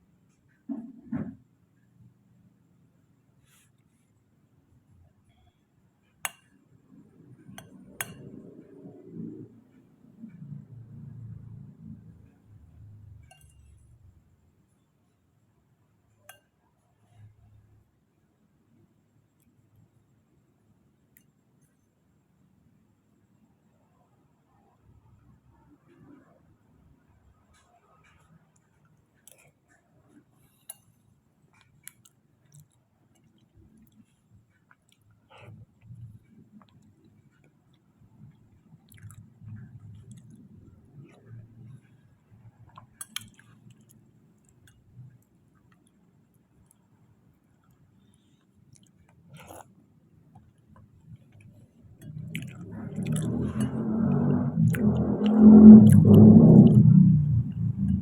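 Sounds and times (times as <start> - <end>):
faint chewing: 27.5 - 56.9
moist mouth clicks: 38.2 - 41.8, 47.7 - 49.7, 50.3 - 56.9.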